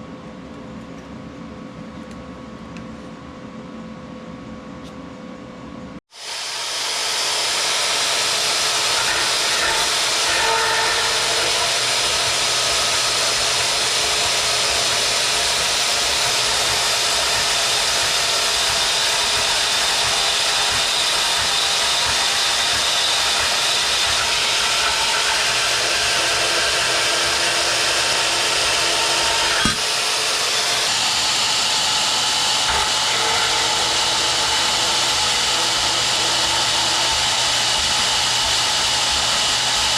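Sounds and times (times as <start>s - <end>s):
power tool grinding steel: 6.1s - 39.9s
brief knock: 29.6s - 29.8s.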